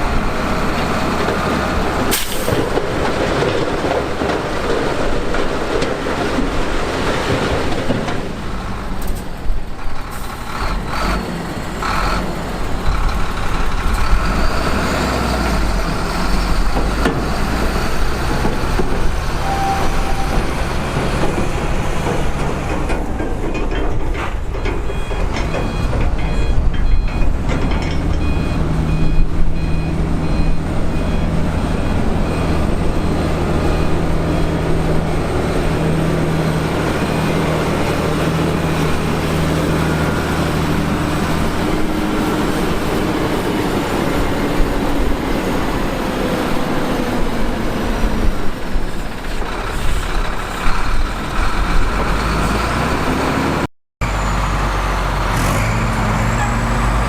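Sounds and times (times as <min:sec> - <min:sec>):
heavy machine diesel engines: 0:00.0 - 0:57.0
reversing alarm beeping: 0:19.4 - 0:21.2, 0:24.6 - 0:27.3, 0:28.1 - 0:32.8.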